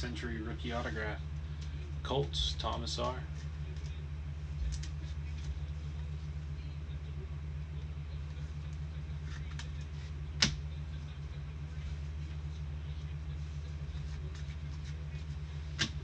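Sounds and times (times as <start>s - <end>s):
steady low hum: 0.0s - 16.0s
trading cards rustling: 13.6s - 16.0s.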